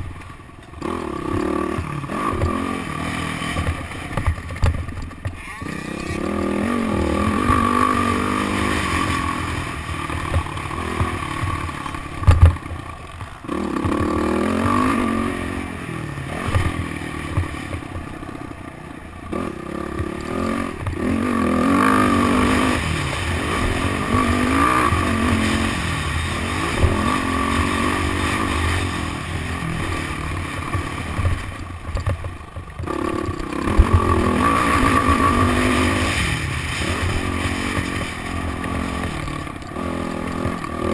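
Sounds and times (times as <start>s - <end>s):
dirt bike engine revving: 0.0s - 40.9s
wind and track noise: 0.0s - 40.9s.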